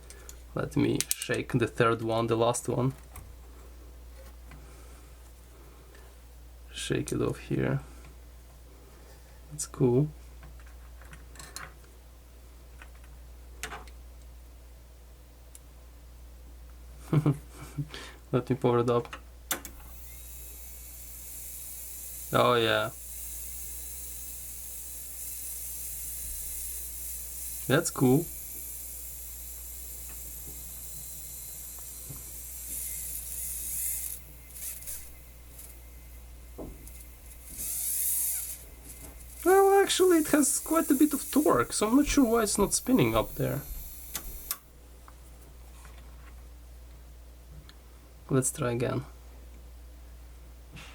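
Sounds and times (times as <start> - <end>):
steady low hum: 0.0 - 48.4
gear drive rubbing and scraping: 36.8 - 44.6.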